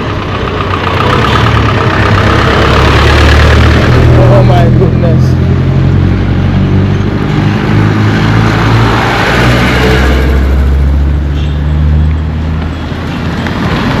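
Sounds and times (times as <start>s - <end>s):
vehicle engine running: 0.0s - 8.2s
vehicle passing: 0.0s - 14.0s.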